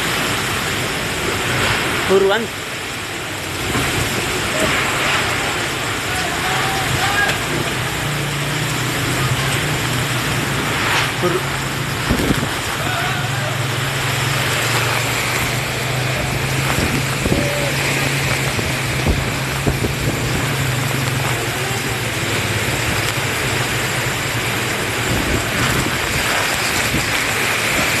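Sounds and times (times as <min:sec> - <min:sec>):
strong wind blowing: 0:11.6 - 0:13.4, 0:15.4 - 0:22.2, 0:24.8 - 0:28.0.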